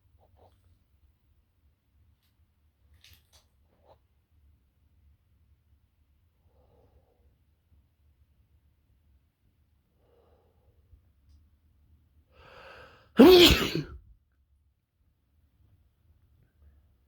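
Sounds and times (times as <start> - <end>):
intake of breath: 12.4 - 13.2
person sneezing: 13.2 - 14.0.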